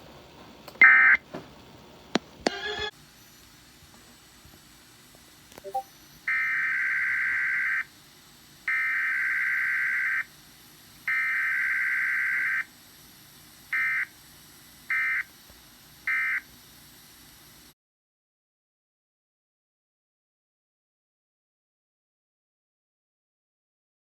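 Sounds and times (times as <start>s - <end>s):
digital data tone bursts: 5.6s - 7.9s.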